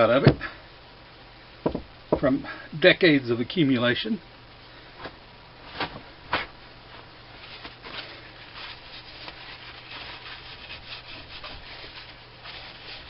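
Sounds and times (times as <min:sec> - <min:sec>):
soft rubbing strokes: 0:05.6 - 0:13.0.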